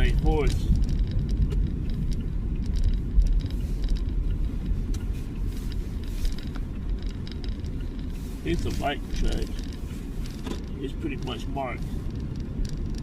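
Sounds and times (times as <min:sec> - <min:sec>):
car road rumble: 0:00.0 - 0:13.0
car knocks and jolts: 0:05.9 - 0:13.0.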